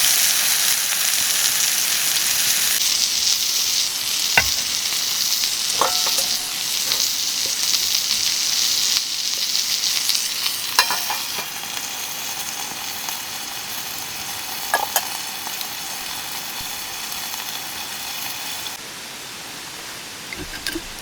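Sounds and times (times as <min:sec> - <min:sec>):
food sizzling in a pan: 0:00.0 - 0:18.8
utensil clicking against pan: 0:05.7 - 0:07.8.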